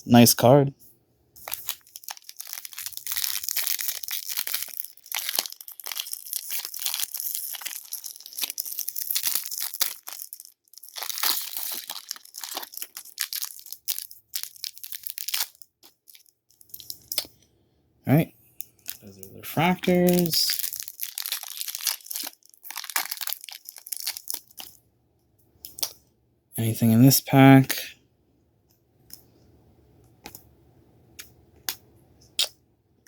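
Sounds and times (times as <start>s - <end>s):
plastic wrapping crinkling: 1.4s - 17.3s, 18.6s - 24.8s.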